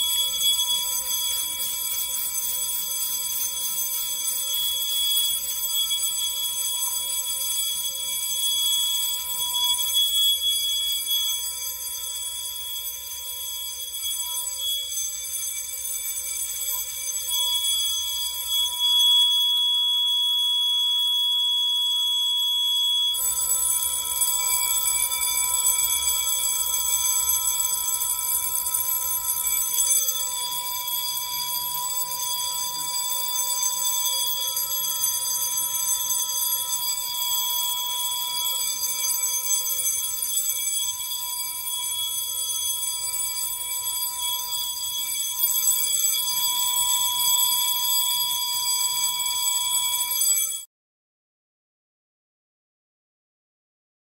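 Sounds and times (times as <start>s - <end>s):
high steady alarm tone: 0.0s - 50.7s
buzzing fire alarm horn: 17.5s - 24.3s.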